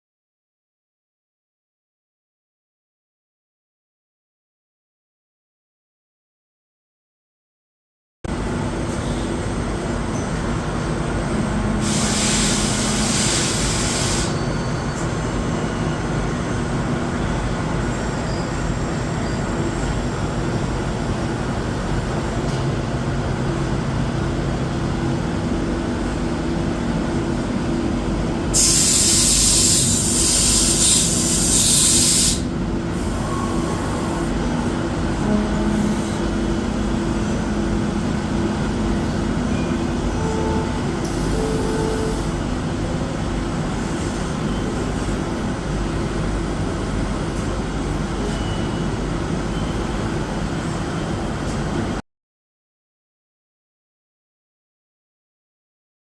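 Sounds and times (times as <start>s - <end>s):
loud hiss: 11.8s - 14.4s, 28.5s - 34.3s.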